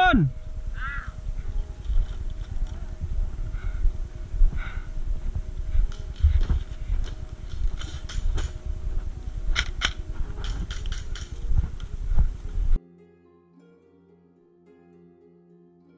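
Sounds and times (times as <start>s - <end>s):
wind rumble on microphone: 0.0s - 12.8s
sharp clicks and snaps: 5.8s - 8.6s, 9.6s - 11.4s.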